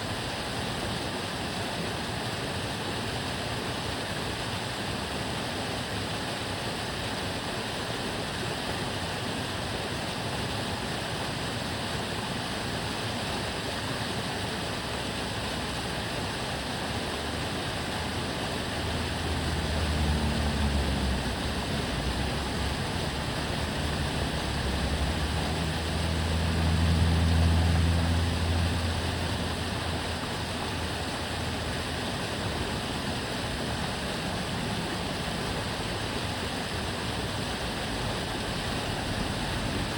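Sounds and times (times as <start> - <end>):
water rushing in canal: 0.0 - 39.9
motor vehicles passing: 17.2 - 39.9.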